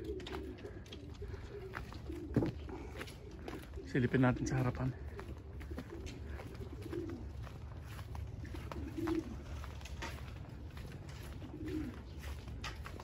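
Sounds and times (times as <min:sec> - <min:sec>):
pigeons cooing: 0:00.0 - 0:13.0.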